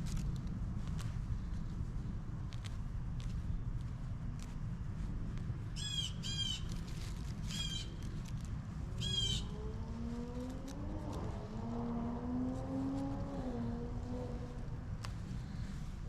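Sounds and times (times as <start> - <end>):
steady low rumble: 0.0 - 16.0
bird harsh calls: 5.8 - 6.7, 7.5 - 7.9, 9.0 - 9.6
low hum rising in pitch: 8.7 - 15.4.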